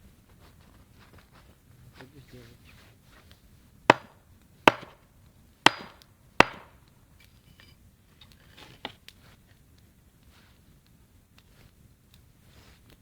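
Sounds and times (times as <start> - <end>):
tool striking wood: 3.9 - 5.0, 5.6 - 6.8.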